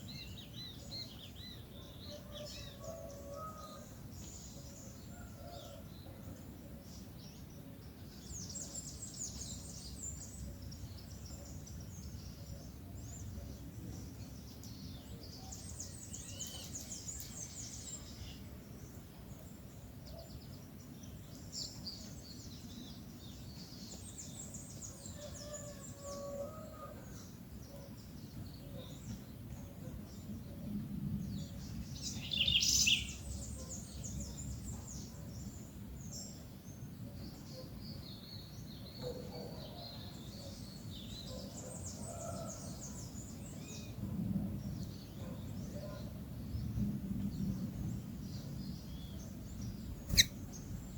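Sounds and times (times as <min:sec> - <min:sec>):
small birds chirping: 0:07.0 - 0:25.2, 0:31.7 - 0:44.0, 0:48.4 - 0:50.9.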